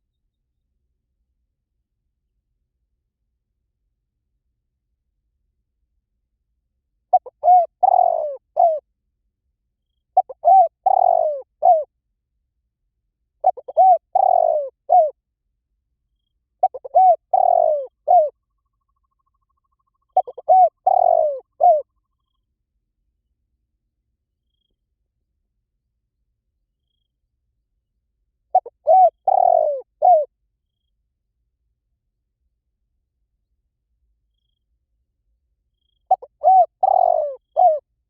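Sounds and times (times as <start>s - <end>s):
dove cooing: 7.1s - 8.8s, 10.2s - 11.9s, 13.4s - 15.2s, 16.6s - 18.4s, 20.1s - 21.9s, 28.5s - 30.3s, 36.1s - 37.8s.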